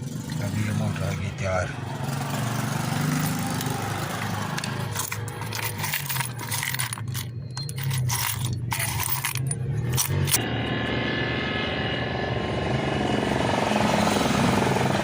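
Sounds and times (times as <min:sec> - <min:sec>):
metallic clinking and rattling: 0:03.6 - 0:10.4
low motor hum: 0:03.6 - 0:15.0.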